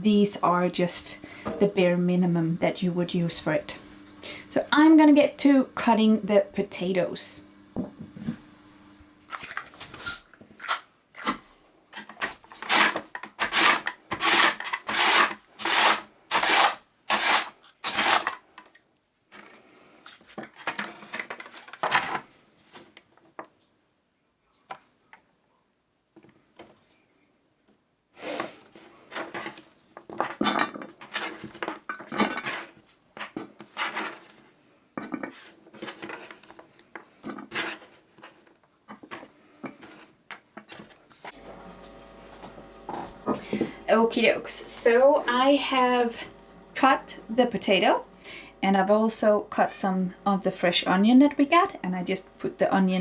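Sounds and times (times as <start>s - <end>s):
knife slicing potatoes on wood: 12.6s - 18.4s.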